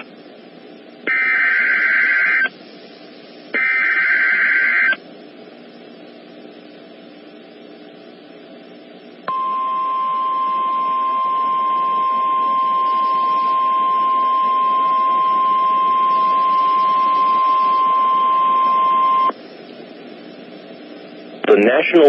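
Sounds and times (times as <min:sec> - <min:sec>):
loud steady warning tone: 0:00.0 - 0:00.4, 0:01.1 - 0:02.6, 0:03.5 - 0:05.0, 0:09.3 - 0:22.0
faint radio hiss: 0:02.5 - 0:03.5, 0:19.3 - 0:22.0.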